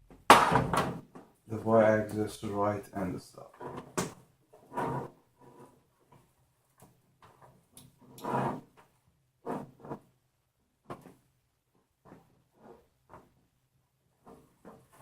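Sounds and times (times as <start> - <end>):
hands scraping and knocking parts: 10.8 - 15.0.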